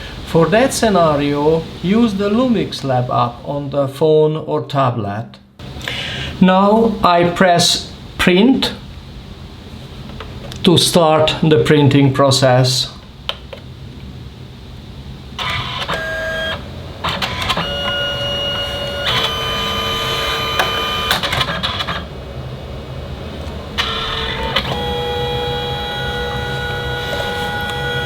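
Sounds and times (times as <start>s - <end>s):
printer motor whining: 15.4s - 22.2s, 23.4s - 28.0s.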